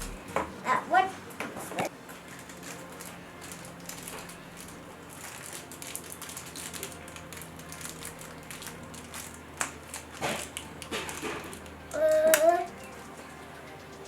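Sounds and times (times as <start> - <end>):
plastic bag crinkling while torn open: 2.2 - 11.7.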